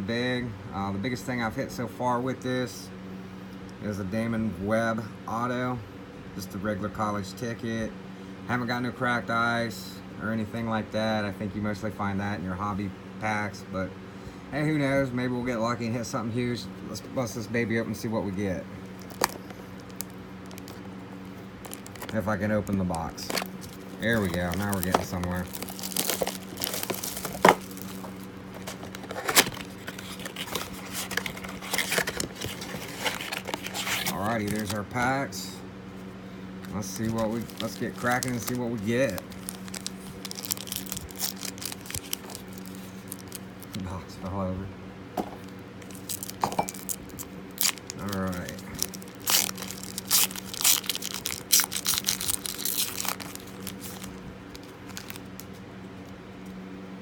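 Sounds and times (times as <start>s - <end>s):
steady low hum: 0.0s - 57.0s
foil packs rustling and crackling: 18.8s - 35.2s, 36.6s - 43.9s, 45.8s - 55.6s.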